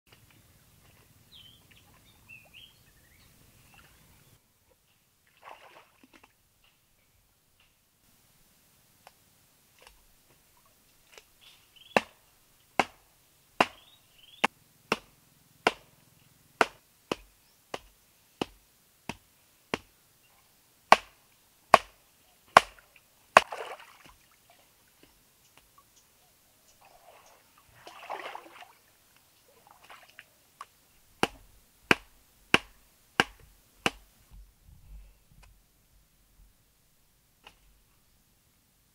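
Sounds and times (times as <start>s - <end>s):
faint bird chirps: 0.3s - 5.1s, 11.4s - 12.0s, 13.7s - 14.5s, 24.5s - 27.7s
sharp chopping strikes: 12.0s - 12.2s, 12.8s - 13.0s, 13.6s - 13.9s, 14.9s - 15.9s, 16.6s - 19.9s, 20.9s - 22.0s, 22.6s - 22.8s, 31.2s - 34.1s.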